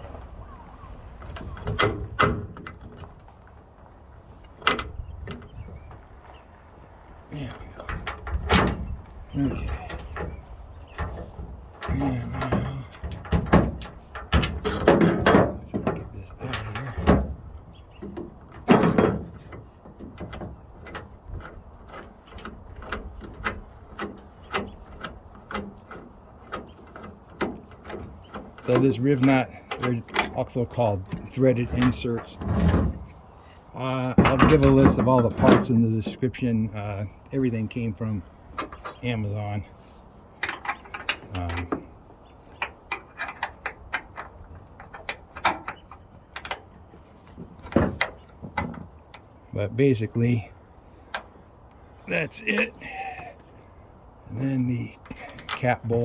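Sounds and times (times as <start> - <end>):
metal parts and tools clicking: 40.4 - 49.3.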